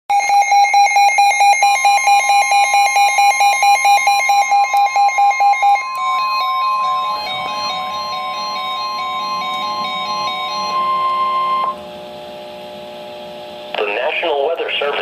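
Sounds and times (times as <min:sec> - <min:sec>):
steady high electronic tone: 0:00.1 - 0:15.0
rapid electronic alert beeps: 0:00.2 - 0:11.8.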